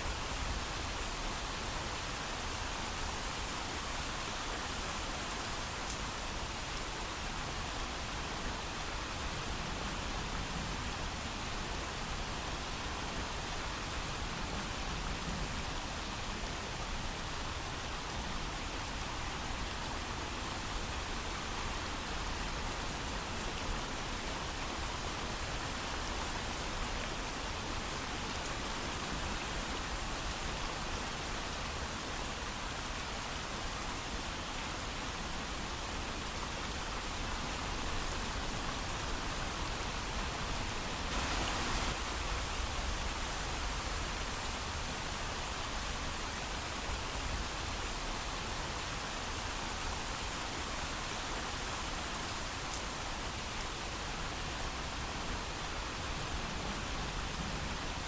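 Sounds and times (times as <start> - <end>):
heavy rain falling: 21.8 - 57.9.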